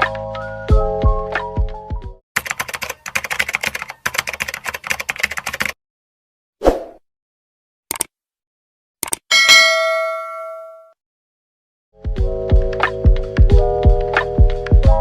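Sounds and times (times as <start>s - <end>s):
keyboard key clicks: 7.9s - 8.1s.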